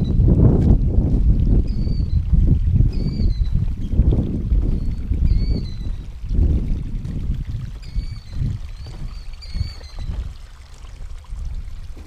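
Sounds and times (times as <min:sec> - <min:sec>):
flowing water: 0:00.0 - 0:12.0
gusting wind: 0:00.0 - 0:12.0
killdeer calling: 0:01.7 - 0:02.2, 0:02.9 - 0:03.6, 0:04.7 - 0:06.0, 0:07.8 - 0:10.2.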